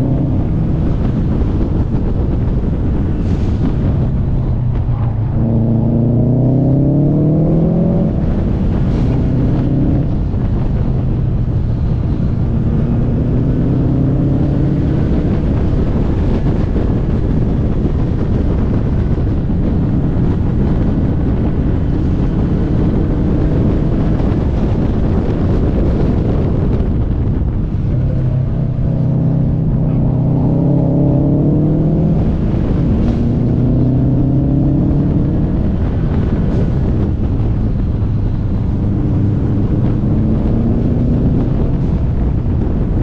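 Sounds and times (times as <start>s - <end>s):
road and wind noise: 0.0s - 43.0s
car engine revving hard: 5.2s - 10.1s, 28.1s - 35.7s.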